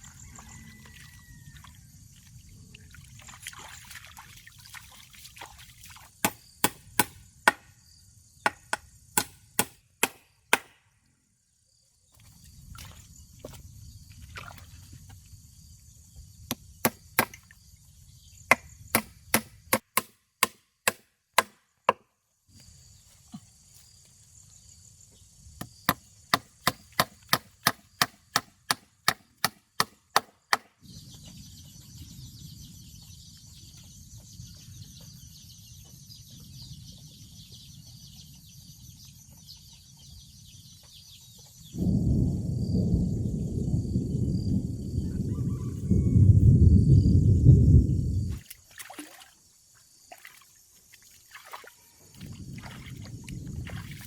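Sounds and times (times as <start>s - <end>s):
blade chopping strikes: 6.2s - 7.6s, 8.5s - 10.8s.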